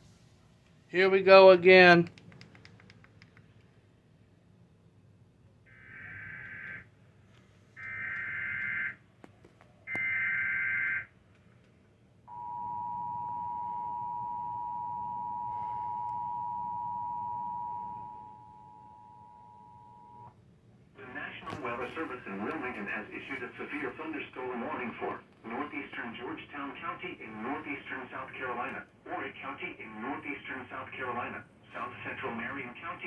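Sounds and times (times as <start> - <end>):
steady two-tone attention signal: 12.3 - 20.3.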